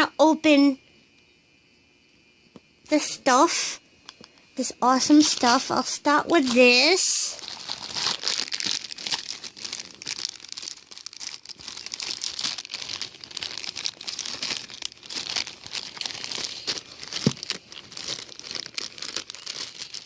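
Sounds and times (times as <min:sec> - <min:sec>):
packaging crinkling and tearing: 0:06.4 - 0:20.0.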